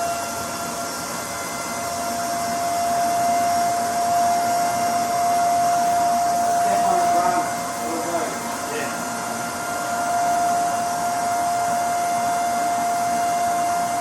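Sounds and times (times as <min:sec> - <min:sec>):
small motor whining: 0:00.0 - 0:14.0.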